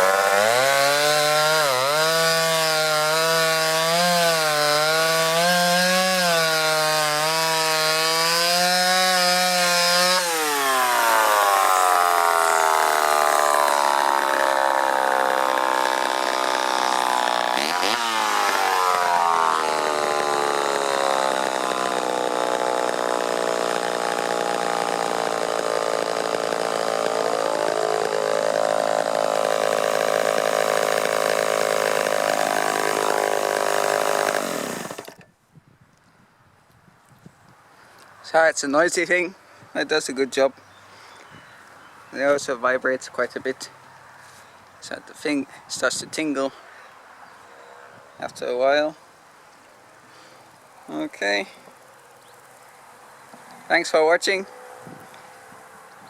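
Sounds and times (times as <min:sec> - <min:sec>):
chainsaw cutting log: 0:00.0 - 0:35.3.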